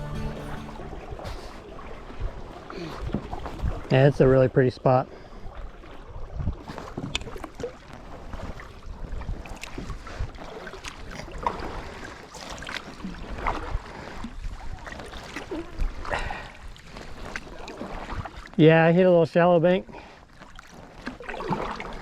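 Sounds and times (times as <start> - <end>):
paddle splashing in water: 0.0 - 4.0, 5.1 - 18.6, 19.9 - 22.0.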